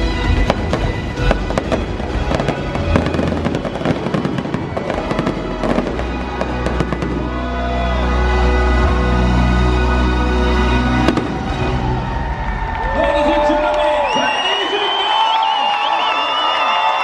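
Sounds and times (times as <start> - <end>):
fireworks bursting and crackling: 0.0 - 7.7, 11.0 - 11.9
music soundtrack: 0.0 - 13.7.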